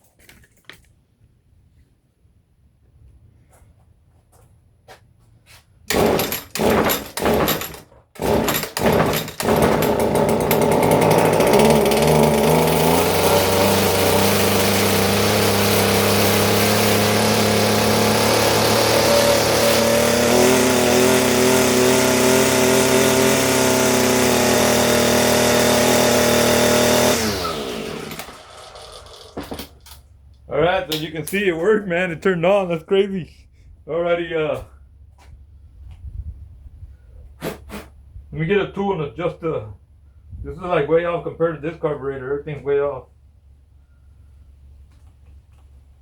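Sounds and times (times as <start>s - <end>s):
string trimmer engine: 5.9s - 30.0s.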